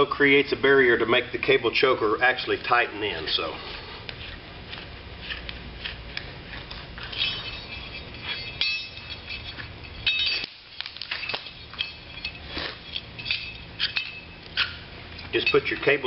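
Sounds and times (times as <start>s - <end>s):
metal clinking and rattling: 7.0s - 16.0s.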